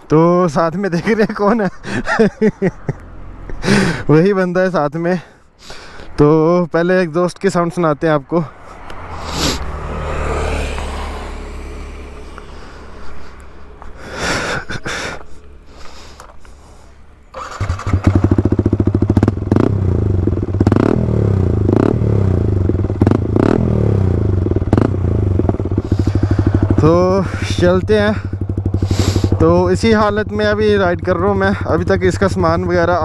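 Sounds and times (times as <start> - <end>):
motorcycle engine idling: 8.6 - 33.0
motorcycle throttle blips: 8.8 - 33.0.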